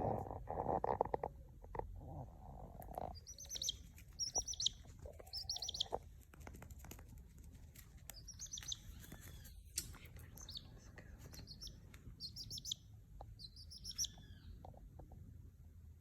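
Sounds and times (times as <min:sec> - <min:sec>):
bird chirping: 0:03.0 - 0:06.0, 0:08.1 - 0:14.8.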